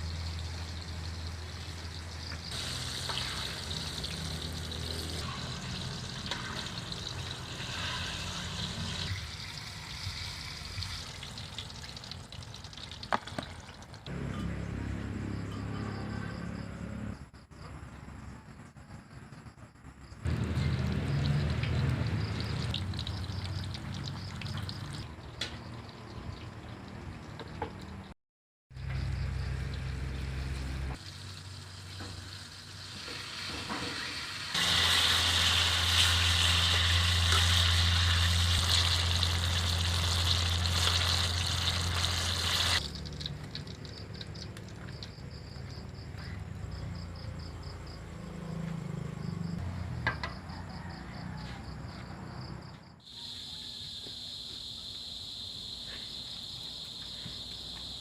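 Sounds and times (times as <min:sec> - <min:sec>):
oil sizzling in a pan: 0:00.0 - 0:14.0, 0:20.3 - 0:25.0, 0:31.0 - 0:44.3.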